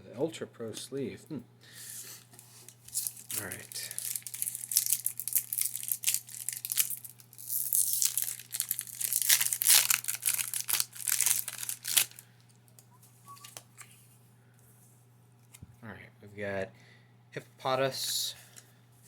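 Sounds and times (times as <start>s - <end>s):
foil wrapper crinkling and tearing: 2.7s - 12.3s.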